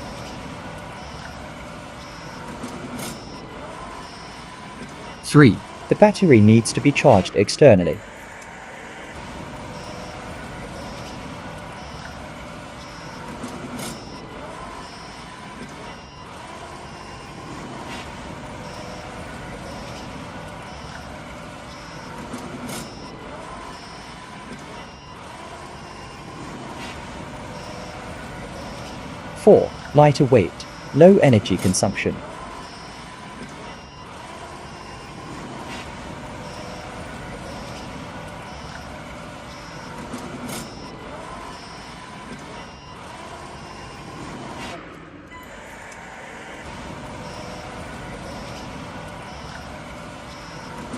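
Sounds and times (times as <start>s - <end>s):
short high beeps: 29.4s - 32.9s.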